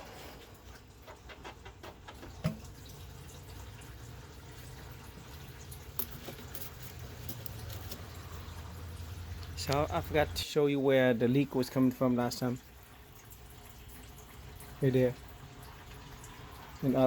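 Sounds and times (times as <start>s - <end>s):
coolant trickling and dripping: 0.0s - 17.0s
radiator hose clicks and knock: 1.0s - 2.7s.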